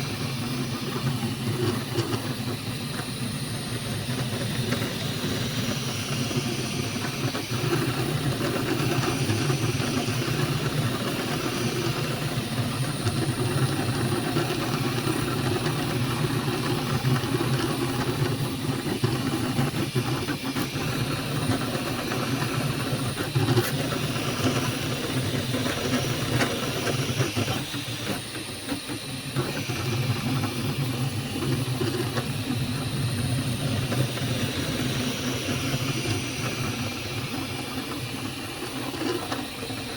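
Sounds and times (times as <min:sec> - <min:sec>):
printer fans and motors whirring: 0:00.0 - 0:39.9.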